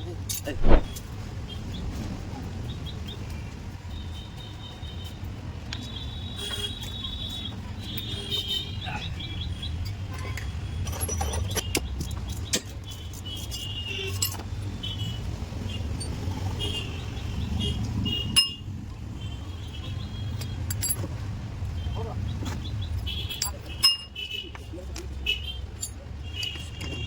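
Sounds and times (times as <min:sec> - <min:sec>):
metallic clinks of tools: 0:14.1 - 0:14.5, 0:20.4 - 0:21.1, 0:23.0 - 0:24.2, 0:24.9 - 0:26.8.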